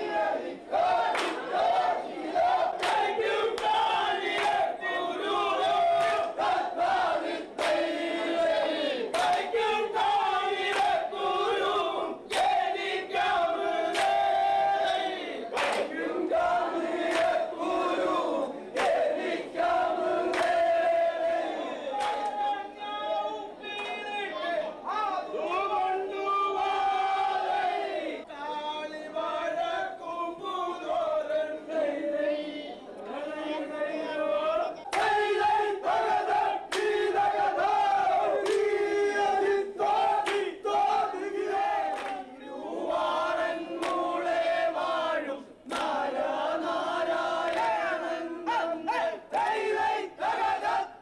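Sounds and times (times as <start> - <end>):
men chanting in chorus: 0.0 - 51.0
men singing in unison: 26.6 - 51.0.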